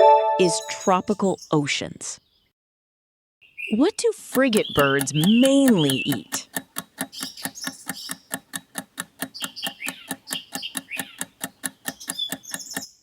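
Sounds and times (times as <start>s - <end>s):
countdown timer ticking: 4.2s - 12.9s.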